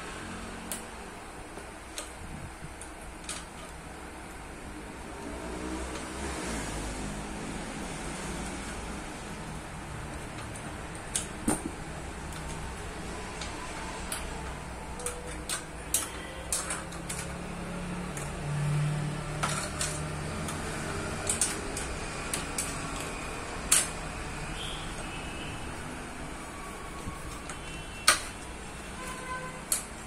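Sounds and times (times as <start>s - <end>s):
metallic clicks of tools and parts: 19.3s - 24.7s.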